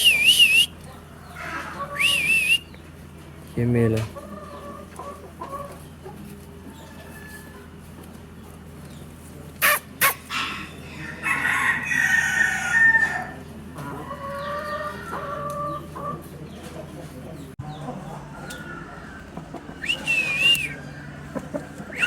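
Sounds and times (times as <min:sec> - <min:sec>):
rooster crowing: 0:10.3 - 0:15.8.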